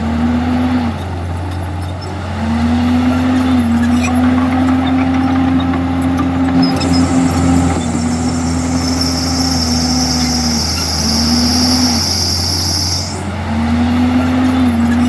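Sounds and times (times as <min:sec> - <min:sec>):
bulldozer diesel engine under load: 0:00.0 - 0:15.0
steady high-pitched whine: 0:03.0 - 0:13.4.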